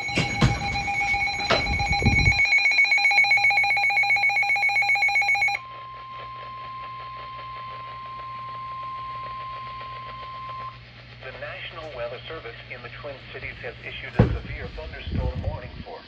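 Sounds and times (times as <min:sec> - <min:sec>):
steady single-pitch tone: 0:00.0 - 0:05.6
rapidly pulsing alarm buzz: 0:00.0 - 0:11.0, 0:13.0 - 0:15.6.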